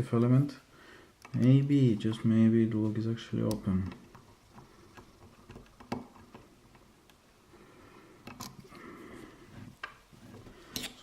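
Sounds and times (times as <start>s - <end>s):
light scraping of lock picks: 10.6s - 11.0s.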